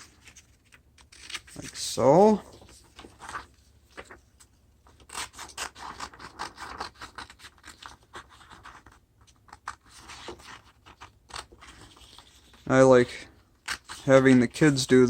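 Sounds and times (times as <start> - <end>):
scissors cutting paper: 5.0 - 12.6, 13.6 - 14.4.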